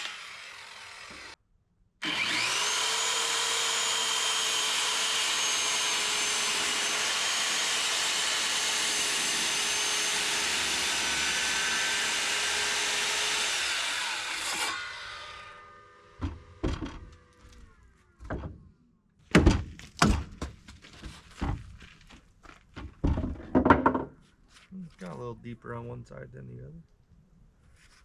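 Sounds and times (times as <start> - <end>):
electric saw cutting wood: 0.0 - 1.4, 2.0 - 17.6
saw motor winding down: 0.0 - 1.4, 2.0 - 16.2
wooden knocks and thunks: 16.2 - 18.7, 19.3 - 24.2.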